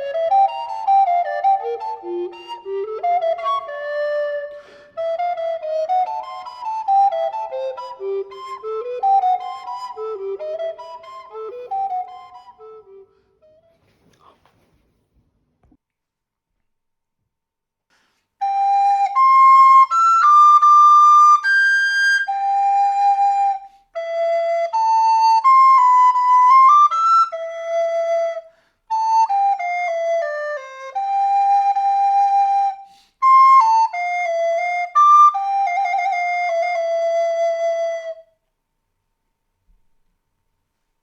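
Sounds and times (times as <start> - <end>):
recorder melody: 0.0 - 13.9
breaths: 4.5 - 5.0, 13.0 - 14.9, 17.9 - 18.4, 23.6 - 24.0, 28.4 - 28.9, 32.8 - 33.2.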